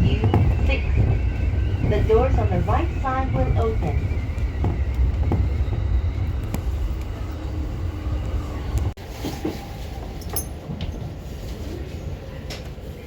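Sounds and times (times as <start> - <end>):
train rumbling: 0.0 - 13.0.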